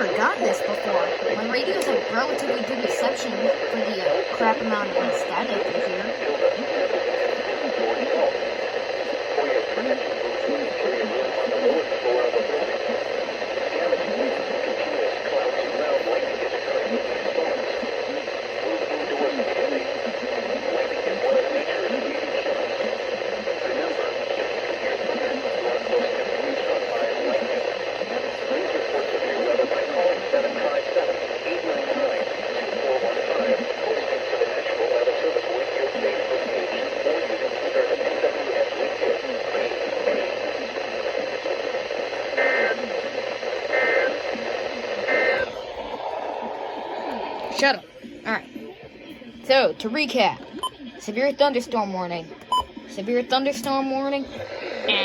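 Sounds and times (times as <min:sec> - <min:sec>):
static hiss: 0:00.0 - 0:47.8
radio broadcast voice: 0:00.0 - 0:55.0.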